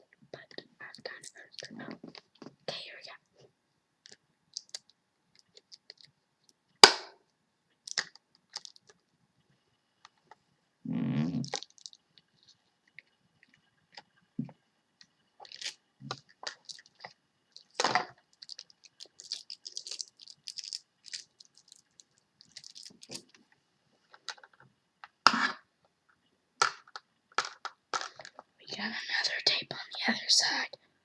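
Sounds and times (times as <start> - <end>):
package crinkling and scratching: 7.9 - 8.9, 11.5 - 12.0, 15.4 - 15.8, 16.5 - 23.3.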